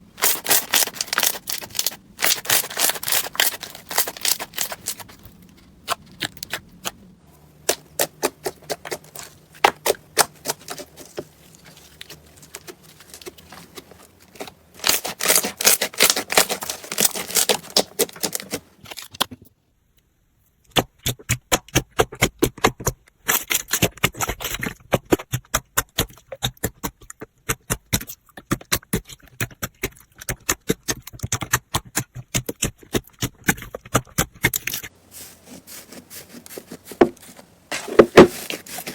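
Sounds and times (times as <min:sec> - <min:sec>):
slime crackling and popping: 0:00.2 - 0:19.2.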